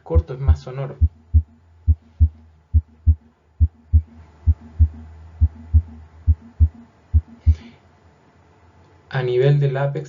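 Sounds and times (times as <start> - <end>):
low hum: 0.9 - 7.8
heartbeat lub-dub: 1.0 - 7.7.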